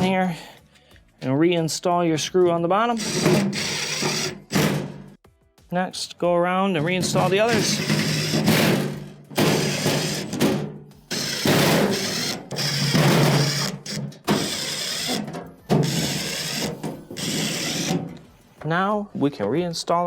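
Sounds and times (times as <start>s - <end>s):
cordless drill driving screws: 3.0s - 5.0s, 7.1s - 18.3s.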